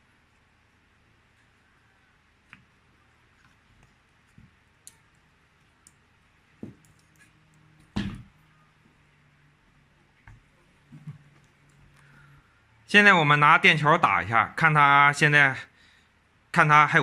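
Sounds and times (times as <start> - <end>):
small components clicking and tapping: 6.7 - 7.9.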